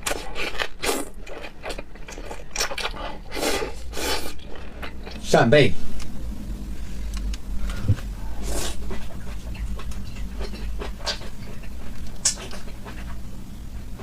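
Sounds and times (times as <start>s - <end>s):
wet chewing and mouth clicks: 0.0s - 5.2s, 8.8s - 13.2s.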